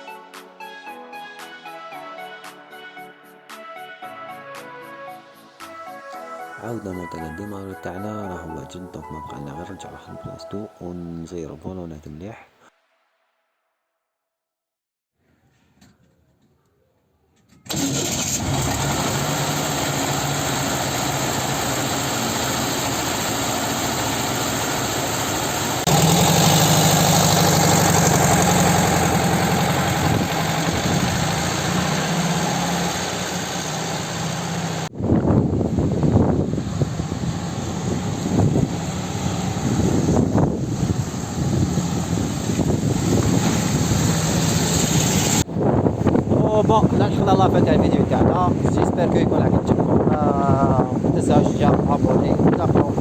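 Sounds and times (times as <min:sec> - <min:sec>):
air-cooled engine running: 0:17.7 - 0:45.4.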